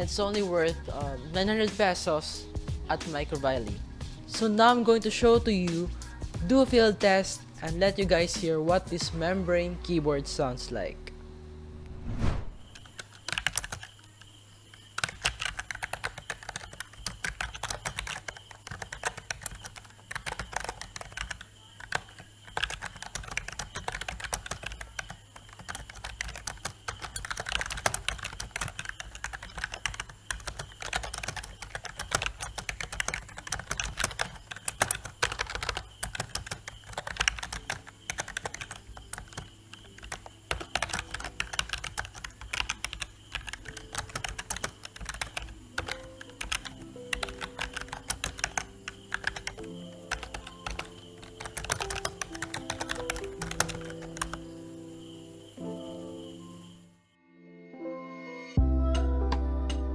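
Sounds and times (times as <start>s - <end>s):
typing on membrane keyboard: 12.7s - 54.9s.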